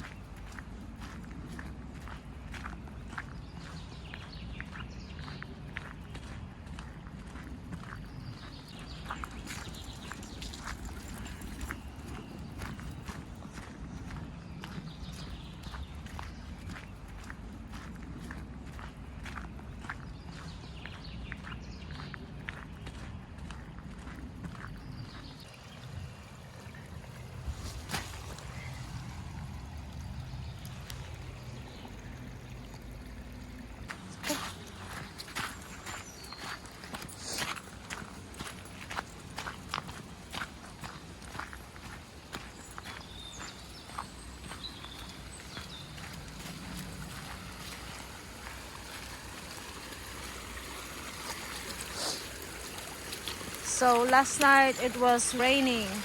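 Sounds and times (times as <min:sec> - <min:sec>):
stream rushing: 0:25.5 - 0:56.0.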